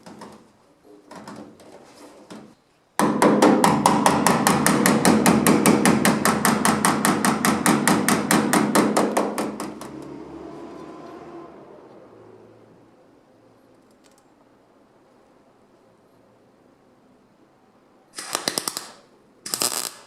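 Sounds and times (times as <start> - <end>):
hammer beating sheet steel: 3.0 - 10.0.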